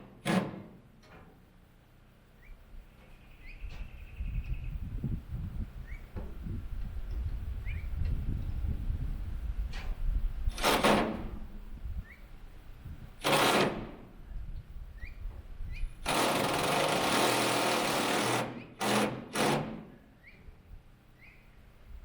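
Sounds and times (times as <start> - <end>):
faint bird chirps: 2.4 - 4.9, 21.1 - 21.6
handheld power tool bursts: 10.5 - 11.4, 13.2 - 14.1, 16.0 - 20.0.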